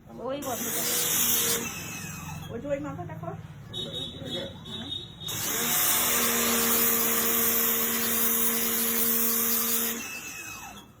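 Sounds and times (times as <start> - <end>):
pressure washer motor humming: 5.3 - 10.8.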